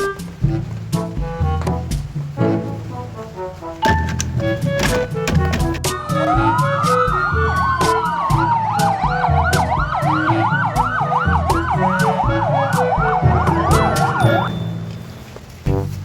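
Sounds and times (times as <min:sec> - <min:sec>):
music with steady beat: 0:00.0 - 0:16.0
fast yelping siren: 0:05.8 - 0:14.6
wailing electronic siren: 0:05.8 - 0:14.6.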